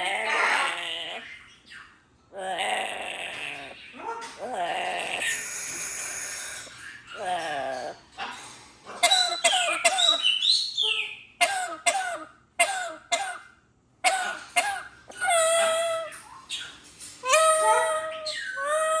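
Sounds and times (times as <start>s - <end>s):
bird raspy coughing calls: 8.9s - 10.4s, 11.4s - 15.7s.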